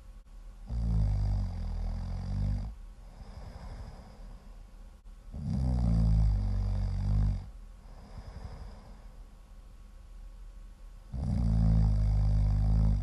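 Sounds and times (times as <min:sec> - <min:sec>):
loud snoring: 0:00.7 - 0:04.2, 0:05.3 - 0:08.9, 0:11.1 - 0:13.0
quiet breathing: 0:01.0 - 0:09.6.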